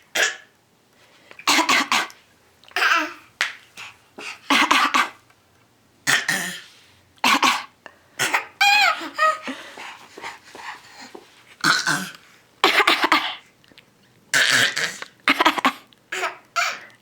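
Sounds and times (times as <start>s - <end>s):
person coughing: 11.6s - 13.4s.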